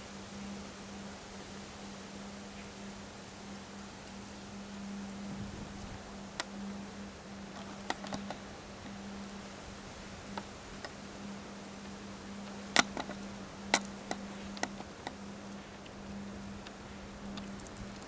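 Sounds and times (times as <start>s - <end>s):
constant low hum: 0.0s - 18.0s.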